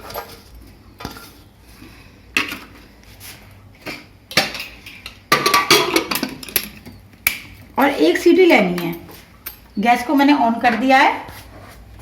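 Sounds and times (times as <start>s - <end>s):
metal kitchenware clinking: 4.3s - 7.0s.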